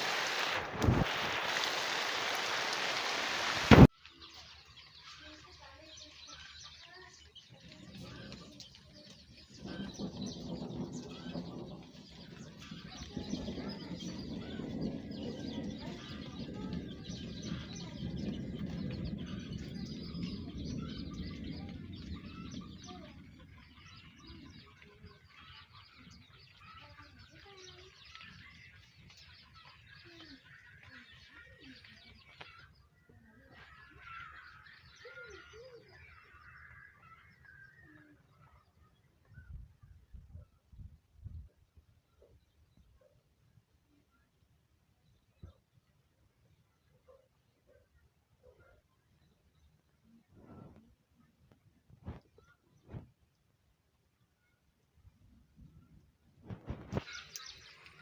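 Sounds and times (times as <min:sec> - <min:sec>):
rushing noise: 0:00.0 - 0:03.9
birds chirping: 0:00.0 - 0:58.0.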